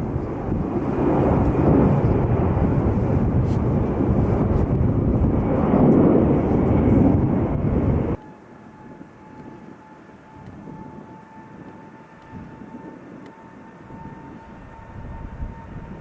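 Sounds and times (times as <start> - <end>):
jet airliner engines rumbling: 0.0 - 16.0.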